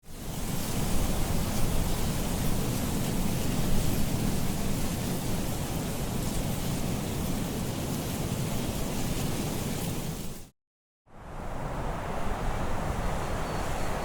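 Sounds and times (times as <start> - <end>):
strong wind blowing: 11.1 - 14.0.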